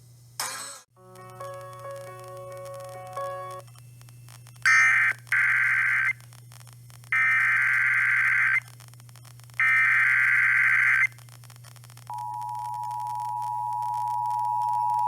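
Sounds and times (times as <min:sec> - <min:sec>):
digital data tone bursts: 0:04.3 - 0:11.2.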